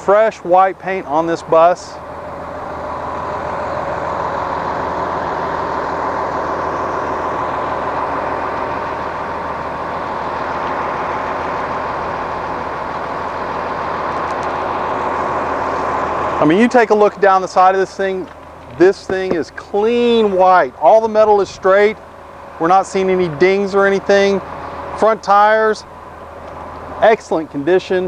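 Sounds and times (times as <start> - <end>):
heavy vehicle engine idling: 0.0 - 28.0.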